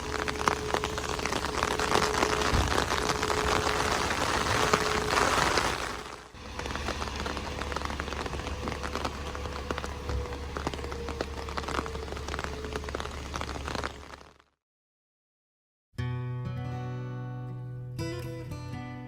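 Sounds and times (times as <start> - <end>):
loud rushing noise: 0.0 - 14.1
low rumble: 0.0 - 14.2
sharp drips: 0.0 - 14.3
rain pattering: 0.0 - 14.4.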